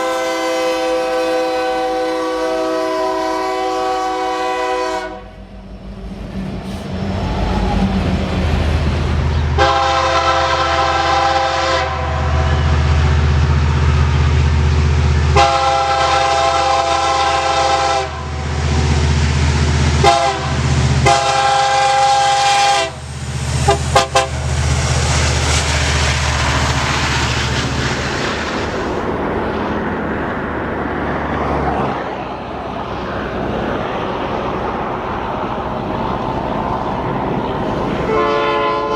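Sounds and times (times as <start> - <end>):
locomotive horn chord: 0.0 - 5.4, 9.6 - 13.2, 15.3 - 18.6, 20.0 - 23.0, 23.6 - 24.6, 38.0 - 38.9
passing train rumble: 0.0 - 38.9.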